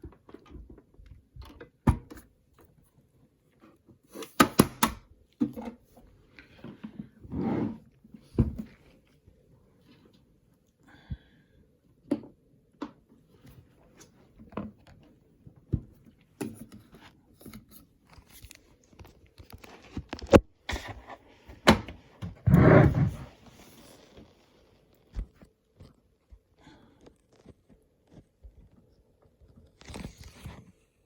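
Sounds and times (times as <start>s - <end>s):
rustling scrape: 22.5s - 24.8s.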